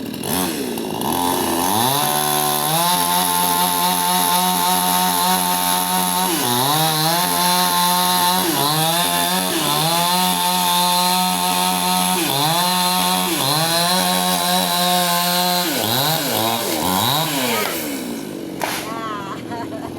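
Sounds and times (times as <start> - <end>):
chainsaw cutting wood: 0.0 - 19.4.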